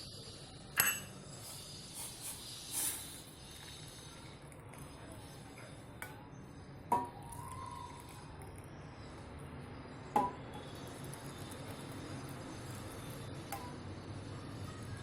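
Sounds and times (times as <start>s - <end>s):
liquid boiling: 0.0s - 15.0s.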